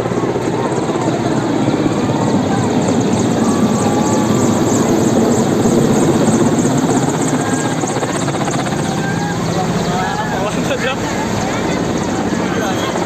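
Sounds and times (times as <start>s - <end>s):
helicopter rotor blade chop: 0.0s - 13.0s.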